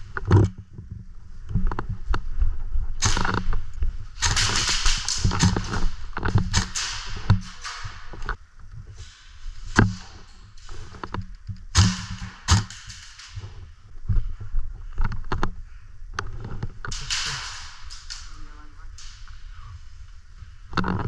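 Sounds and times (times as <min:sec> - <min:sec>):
rustling movement: 0:00.0 - 0:21.0
airsoft guns firing: 0:04.2 - 0:08.3, 0:11.7 - 0:13.4, 0:16.9 - 0:19.2.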